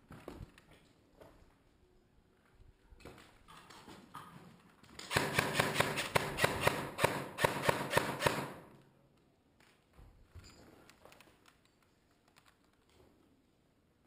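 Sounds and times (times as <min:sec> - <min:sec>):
airsoft gun rapid shots: 0:05.0 - 0:08.7.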